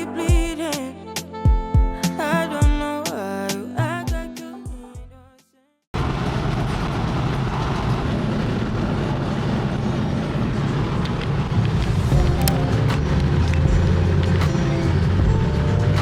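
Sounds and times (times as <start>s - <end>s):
car road and engine noise: 6.0s - 16.0s.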